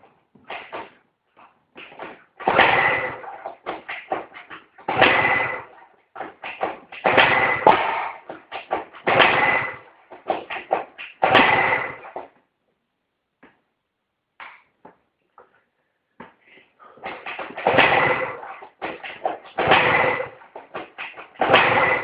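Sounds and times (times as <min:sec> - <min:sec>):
scooter engine cranking: 0:17.1 - 0:22.0.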